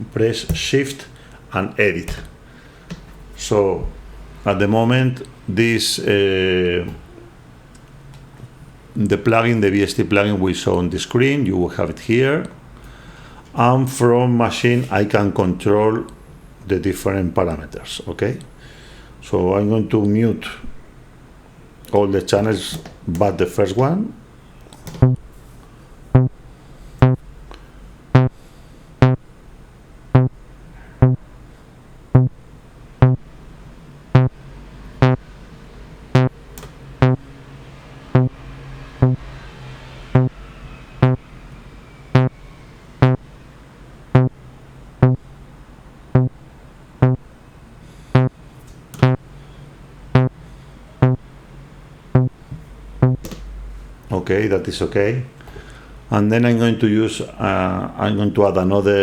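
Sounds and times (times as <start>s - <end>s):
punchy low synthesizer note: 33.0s - 33.2s, 36.2s - 36.4s, 38.2s - 38.4s, 39.0s - 39.3s, 40.2s - 40.4s, 41.0s - 41.2s, 53.0s - 53.2s.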